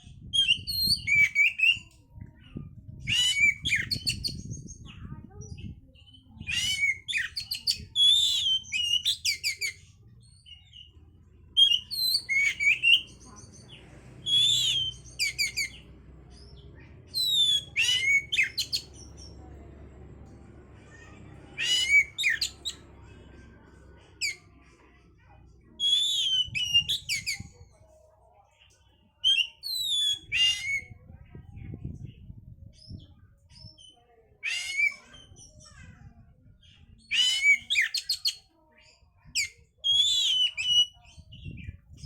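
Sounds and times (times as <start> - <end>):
bird singing whistled notes: 0.3 - 1.9, 3.0 - 4.9, 5.6 - 10.9, 11.6 - 15.9, 16.5 - 19.3, 25.8 - 27.6, 29.2 - 31.0, 39.3 - 42.0.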